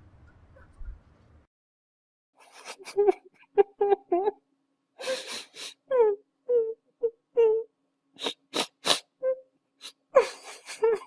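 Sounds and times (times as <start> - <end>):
person crying: 2.5 - 4.4, 5.0 - 11.0
sobbing breaths: 5.0 - 11.0.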